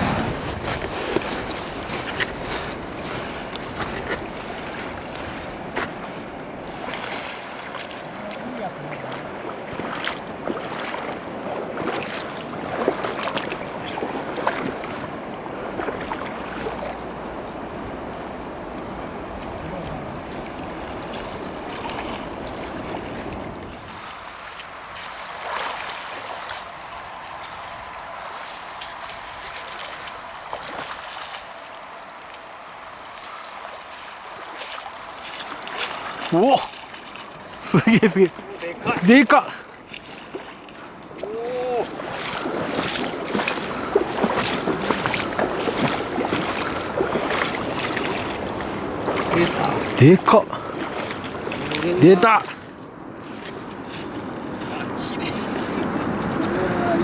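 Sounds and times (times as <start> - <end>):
river water rushing: 0.0 - 57.0
fish thrashing in water: 41.8 - 50.0.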